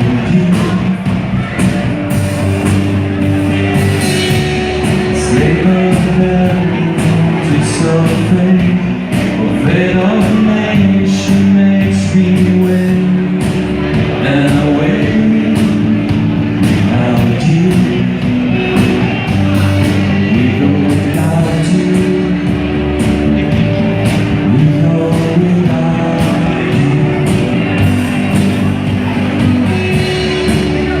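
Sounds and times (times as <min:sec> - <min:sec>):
person singing: 0:00.0 - 0:31.0
rock band playing live: 0:00.0 - 0:31.0.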